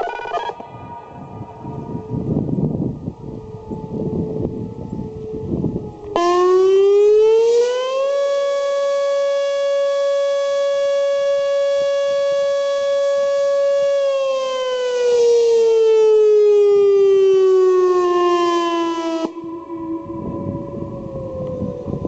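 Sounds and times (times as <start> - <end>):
warning siren winding down: 0.0 - 22.0.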